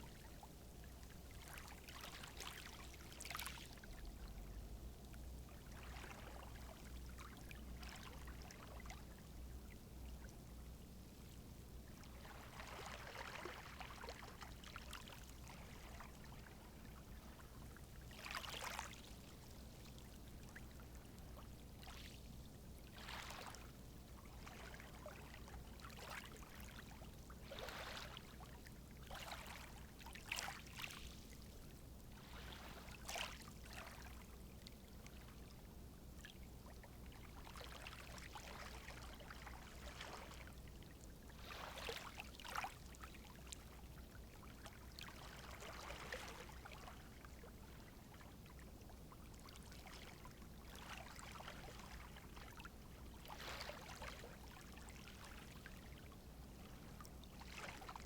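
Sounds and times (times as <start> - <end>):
low steady rumble: 0.0 - 13.4.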